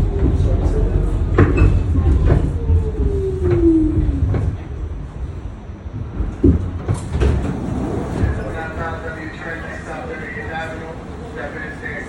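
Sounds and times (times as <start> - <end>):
subway train rumble: 0.0 - 12.0.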